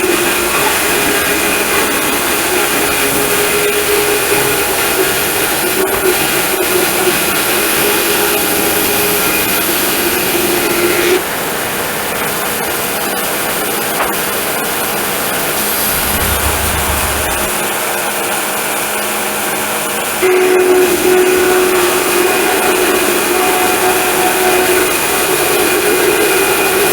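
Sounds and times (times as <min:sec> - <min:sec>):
sawmill running: 0:15.2 - 0:17.9
steady saw tone: 0:15.5 - 0:17.7.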